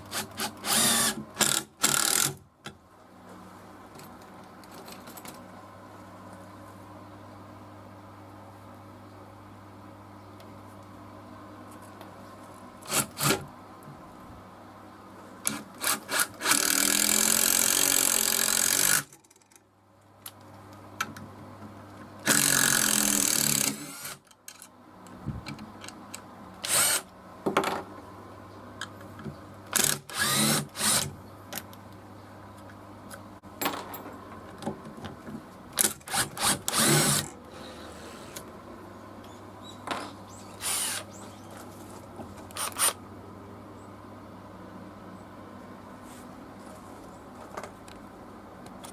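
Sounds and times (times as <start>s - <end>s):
cordless impact driver running: 0.7s - 2.3s, 29.8s - 31.1s, 36.1s - 38.4s, 40.6s - 41.0s.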